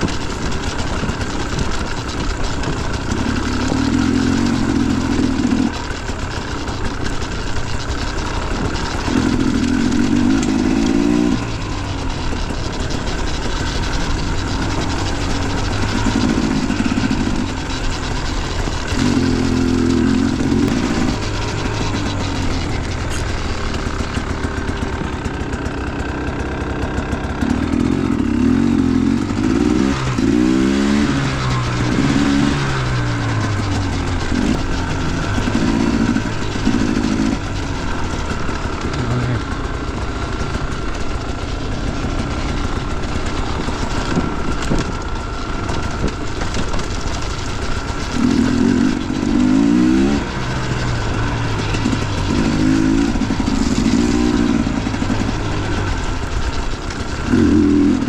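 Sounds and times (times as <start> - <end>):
dirt bike engine revving: 0.0 - 58.0.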